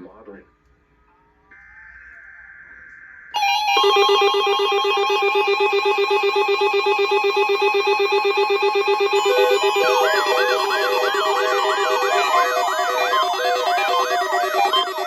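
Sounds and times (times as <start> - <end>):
electronic alarm trill: 2.6 - 15.0
siren-like sweep: 2.6 - 15.0.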